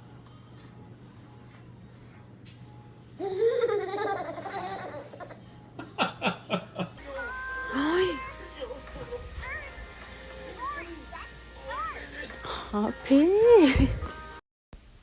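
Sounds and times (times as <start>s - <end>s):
baby laughing: 3.2s - 5.5s.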